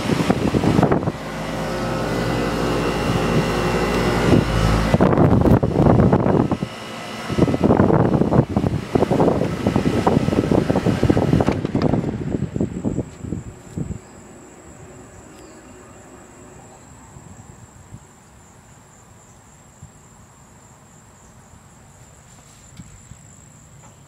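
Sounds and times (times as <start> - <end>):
air buffeting the microphone: 0.0 - 15.6
air conditioner fan humming: 0.0 - 17.8.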